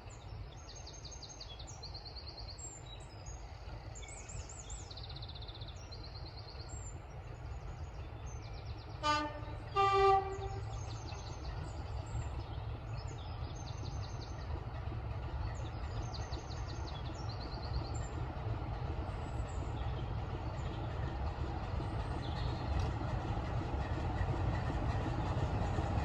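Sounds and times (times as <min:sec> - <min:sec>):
train rumbling: 0:00.0 - 0:26.0.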